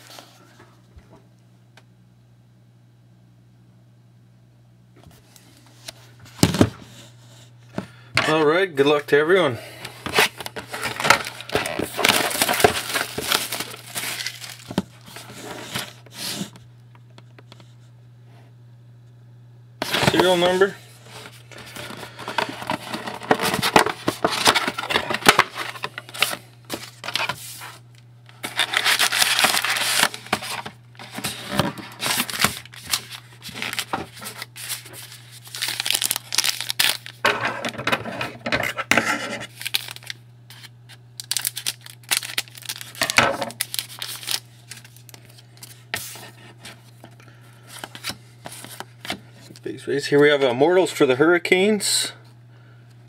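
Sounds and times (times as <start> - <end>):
steady low hum: 0.0 - 53.0
cards rubbing and sliding: 9.9 - 16.5, 19.8 - 27.8, 28.4 - 41.0, 47.6 - 49.6
wrappers tearing and crinkling: 10.0 - 16.5, 19.8 - 37.9, 39.3 - 47.0.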